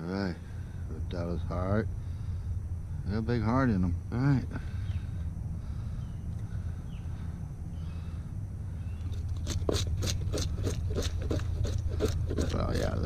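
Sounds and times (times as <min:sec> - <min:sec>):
steady low rumble: 0:00.0 - 0:13.0
knife scraping fish: 0:09.2 - 0:13.0.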